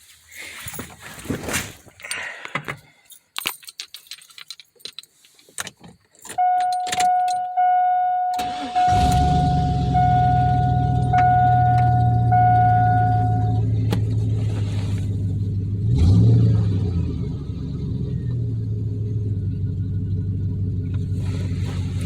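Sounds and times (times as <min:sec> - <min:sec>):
keys jangling: 0:03.0 - 0:07.5
car warning chime: 0:06.3 - 0:13.9
car engine starting and idling: 0:06.3 - 0:22.0.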